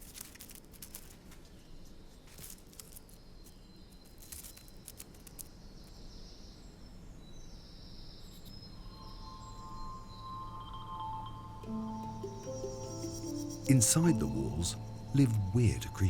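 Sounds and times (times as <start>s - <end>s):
small animals scrabbling over debris: 0.0s - 5.7s.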